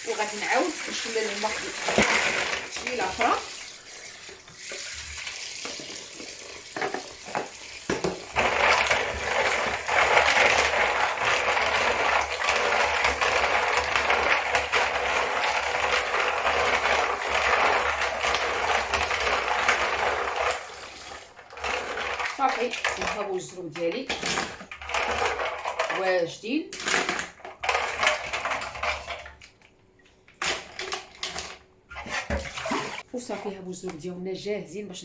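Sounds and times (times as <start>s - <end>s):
mussel shells clattering in a bowl: 0.4s - 3.6s, 5.9s - 20.6s, 21.4s - 29.3s.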